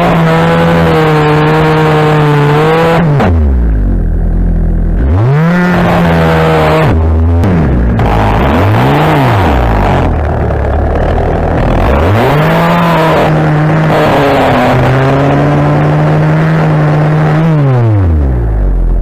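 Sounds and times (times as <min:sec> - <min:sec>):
small engine revving: 0:05.0 - 0:19.0.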